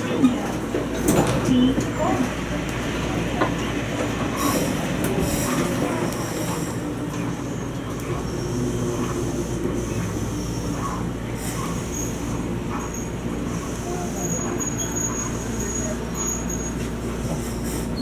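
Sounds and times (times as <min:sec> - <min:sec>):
train rolling and humming: 0:00.0 - 0:18.0
wheels squealing on rails: 0:04.2 - 0:18.0.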